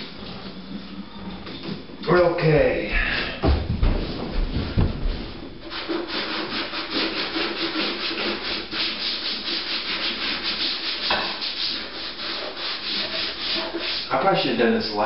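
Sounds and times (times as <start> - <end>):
low knocks: 2.6 - 5.6
rag scrubbing inside refrigerator: 5.0 - 14.8.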